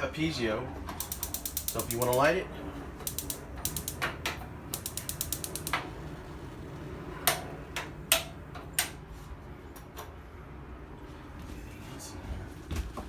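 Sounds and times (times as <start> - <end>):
spark igniter clicking: 1.0 - 2.3, 3.0 - 6.0.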